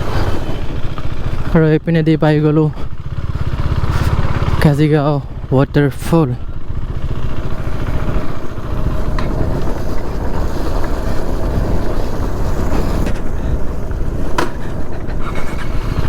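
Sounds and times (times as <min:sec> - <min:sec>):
motorcycle road noise: 0:00.0 - 0:16.0
wind buffeting microphone: 0:06.4 - 0:16.0.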